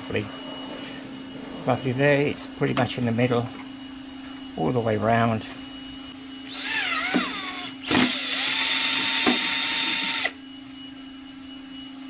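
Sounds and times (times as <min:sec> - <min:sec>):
cordless drill drilling: 0:06.2 - 0:10.4.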